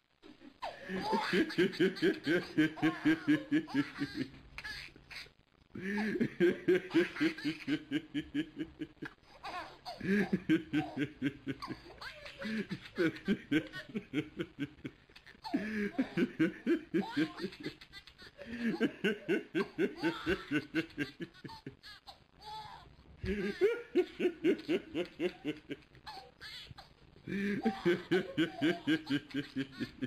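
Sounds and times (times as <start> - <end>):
hearty rapid laughing: 27.3 - 30.0.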